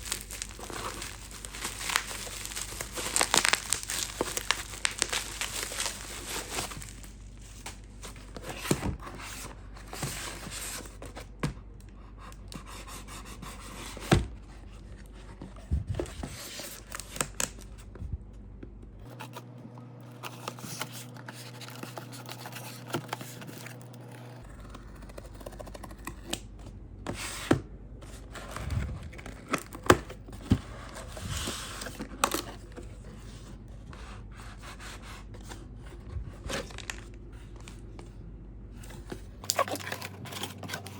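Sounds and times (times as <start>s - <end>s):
plastic packaging crinkling and tearing: 0.0s - 8.8s, 16.1s - 17.9s, 20.1s - 26.5s, 28.5s - 30.4s, 36.4s - 37.8s, 38.9s - 40.9s.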